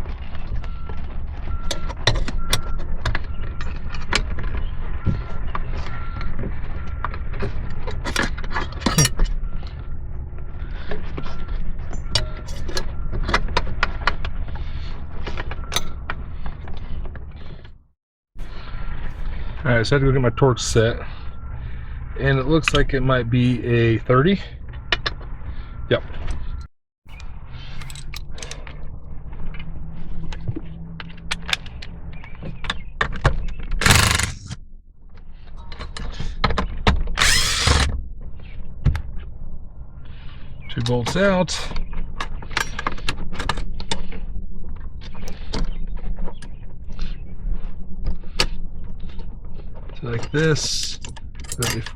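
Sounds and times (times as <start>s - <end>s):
tool clicks and knocks: 8.1s - 9.3s, 33.8s - 34.6s, 37.2s - 38.0s
ratchet clicking: 33.8s - 34.6s, 37.2s - 37.9s.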